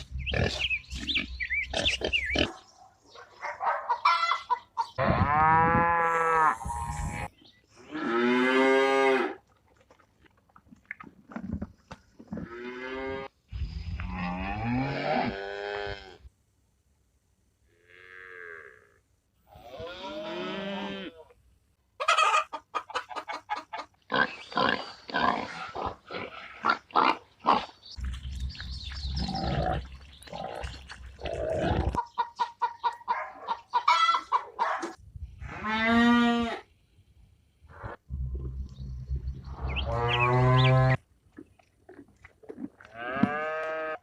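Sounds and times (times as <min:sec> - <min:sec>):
drawn-out chicken calls: 0:03.6 - 0:07.3, 0:22.0 - 0:24.1, 0:31.7 - 0:34.9, 0:39.5 - 0:41.0
chickens clucking: 0:03.7 - 0:05.0, 0:22.0 - 0:24.0, 0:31.7 - 0:35.0.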